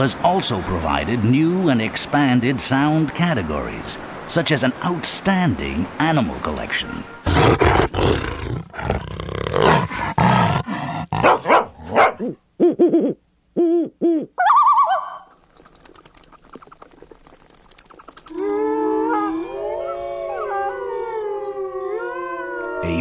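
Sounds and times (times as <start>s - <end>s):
growling roars: 7.2s - 12.0s, 18.3s - 23.0s
hooting calls: 11.2s - 23.0s
high warbling call: 13.6s - 20.5s
faint high chirping: 14.4s - 20.4s
dog or wolf howling: 18.2s - 23.0s.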